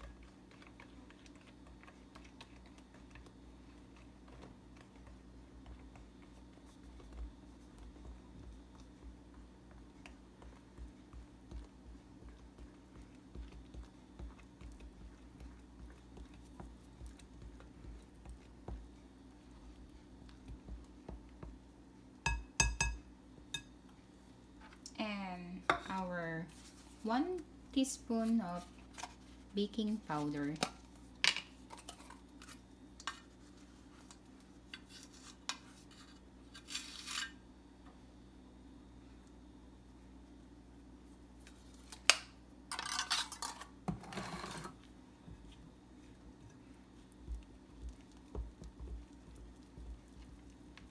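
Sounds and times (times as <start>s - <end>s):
steady low hum: 0.0s - 31.2s, 44.7s - 50.9s
utensil tapping against bowl: 22.2s - 23.7s
utensil scraping mixing bowl: 43.2s - 44.9s.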